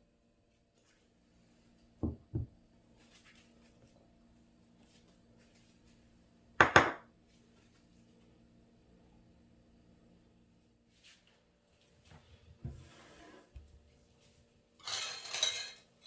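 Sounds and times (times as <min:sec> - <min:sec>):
low steady hum: 0:00.0 - 0:16.0
kitchenware sharp clinks: 0:14.8 - 0:15.9.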